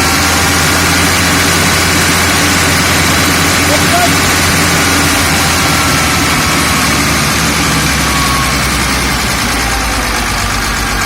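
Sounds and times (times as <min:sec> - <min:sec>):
heavy machine engine idling: 0:00.0 - 0:11.0.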